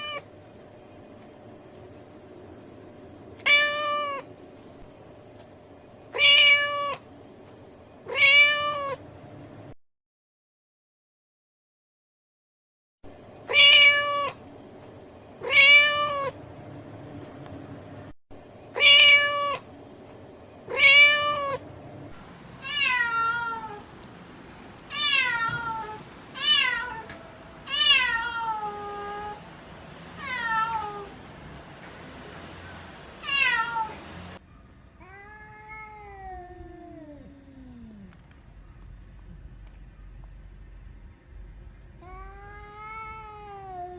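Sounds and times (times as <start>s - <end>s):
cat meowing: 0.0s - 0.3s, 3.4s - 4.3s, 6.2s - 7.0s, 8.1s - 9.0s, 13.5s - 14.4s, 15.4s - 16.4s, 18.8s - 19.6s, 20.7s - 21.6s, 22.6s - 23.8s, 24.9s - 29.4s, 30.2s - 31.2s, 33.2s - 34.0s, 35.0s - 38.1s, 42.0s - 43.9s.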